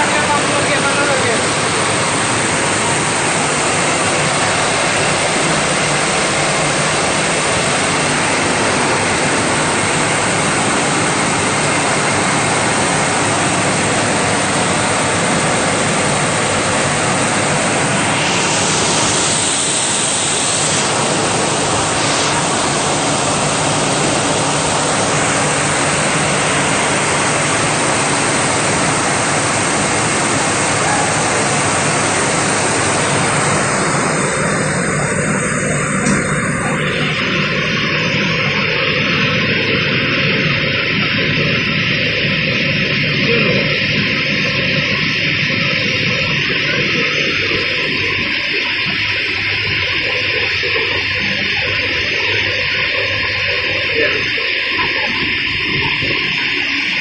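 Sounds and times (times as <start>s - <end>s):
sorting machine rushing noise: 0.0s - 38.8s.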